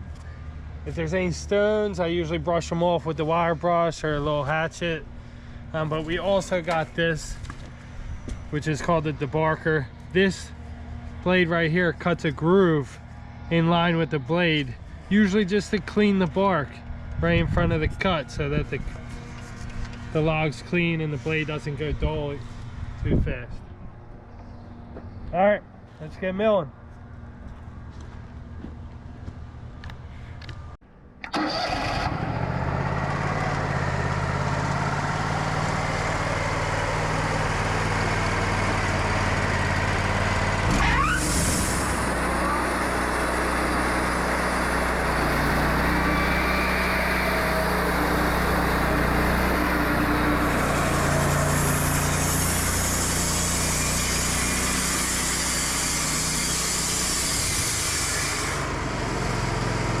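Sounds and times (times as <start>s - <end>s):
sawmill engine running: 0.0s - 22.6s, 31.2s - 60.0s
band saw blade hissing through log: 41.0s - 44.0s, 44.6s - 58.8s.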